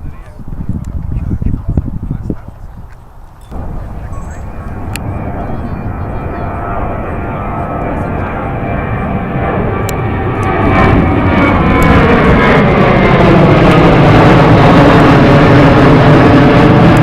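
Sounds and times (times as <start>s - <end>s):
jet airliner passing: 0.0s - 17.0s.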